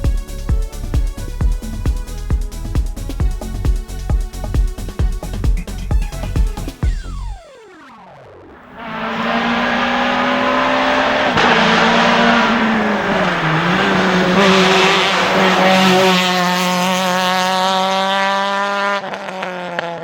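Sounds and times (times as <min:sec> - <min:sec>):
rally car engine at high revs: 0:08.6 - 0:20.0.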